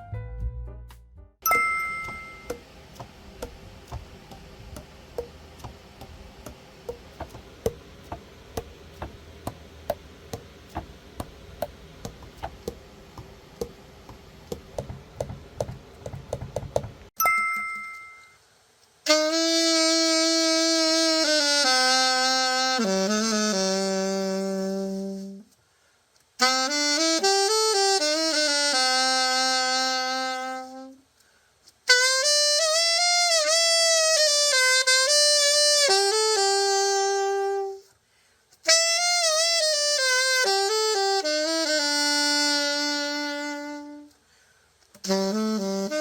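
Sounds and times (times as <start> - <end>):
solo saxophone melody: 19.0 - 25.6, 26.4 - 31.1, 31.8 - 37.9, 38.6 - 44.2, 45.0 - 46.0.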